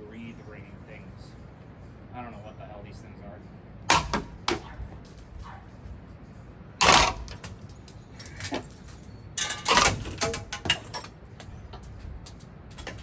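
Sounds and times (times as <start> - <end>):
metal rings clanking: 6.8 - 13.0
metallic ringing: 8.7 - 11.1.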